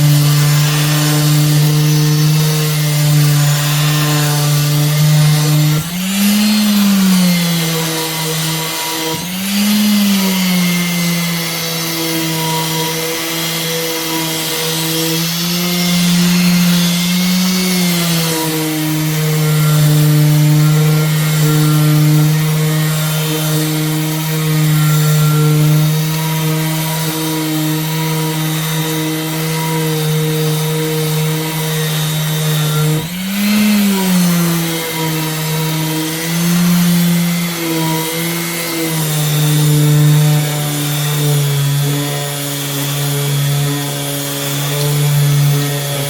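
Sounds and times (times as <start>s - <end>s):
power sander on metal: 0.0s - 46.0s.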